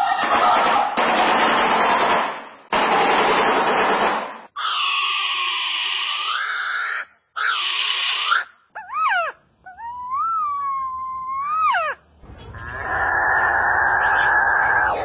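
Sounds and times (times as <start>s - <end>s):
bird calling: 6.7s - 15.0s.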